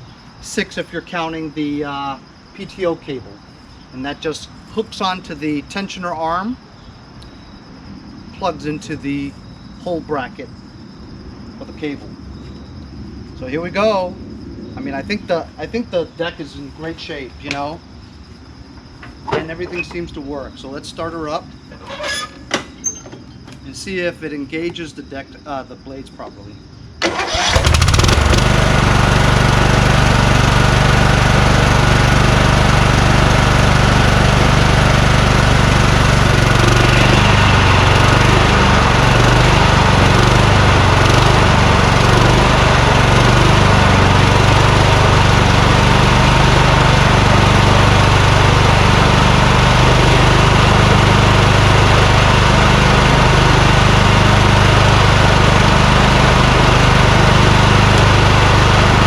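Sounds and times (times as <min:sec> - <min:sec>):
lawn tractor engine running: 0:27.0 - 0:59.0.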